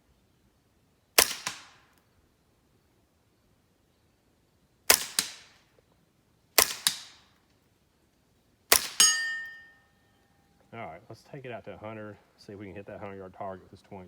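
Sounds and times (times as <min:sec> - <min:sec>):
sharp crack: 0:01.2 - 0:02.0, 0:04.9 - 0:05.7, 0:06.6 - 0:07.4, 0:08.7 - 0:09.7
suppressed rifle shots: 0:01.2 - 0:02.0, 0:04.9 - 0:05.7, 0:06.6 - 0:07.4, 0:08.7 - 0:09.7
metallic ringing tone: 0:09.0 - 0:10.6.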